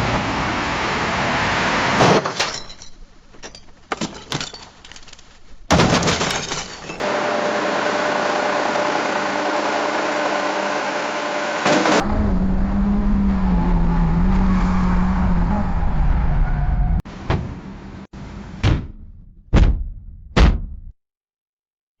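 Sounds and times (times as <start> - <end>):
car crash impact: 5.7 - 6.9
heavy thuds: 18.6 - 20.9.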